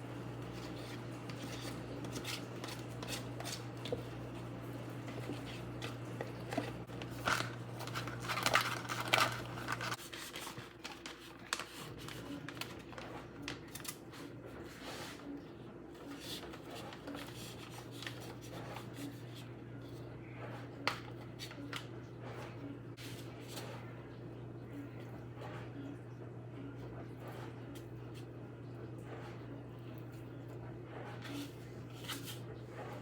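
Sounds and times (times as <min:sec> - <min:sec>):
packaging rustling: 0:05.0 - 0:14.2
kitchen handling clicks and clatter: 0:05.1 - 0:10.0.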